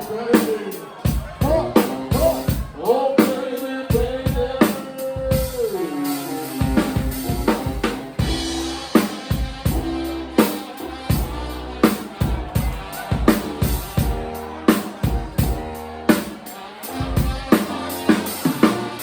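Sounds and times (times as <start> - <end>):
drum kit beat: 0.0 - 19.0
live band playing: 0.0 - 19.0.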